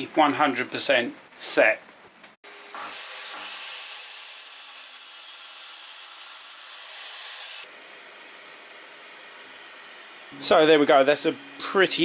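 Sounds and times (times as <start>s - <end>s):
mitre saw cutting wood: 2.7s - 12.0s.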